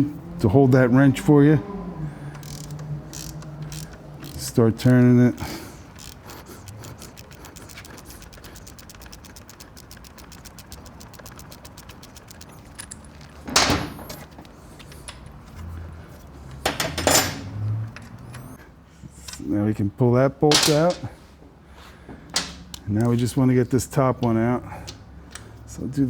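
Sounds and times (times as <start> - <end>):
ratchet wrench clicking: 2.3 - 13.4.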